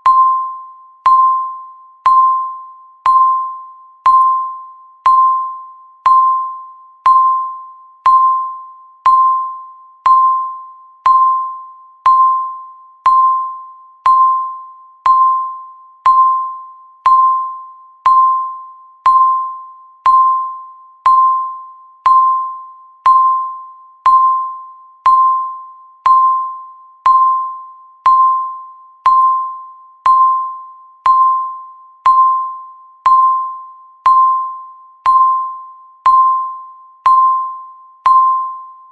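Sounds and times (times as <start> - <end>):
timer electronic beeps: 0.0 - 38.9.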